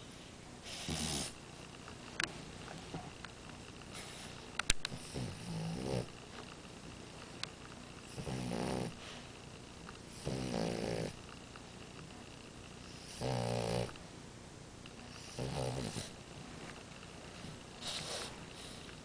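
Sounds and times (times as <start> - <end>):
dog snoring: 0.6 - 1.4, 3.9 - 6.2, 8.1 - 9.3, 10.1 - 11.3, 12.8 - 14.0, 15.0 - 16.2, 17.4 - 19.0.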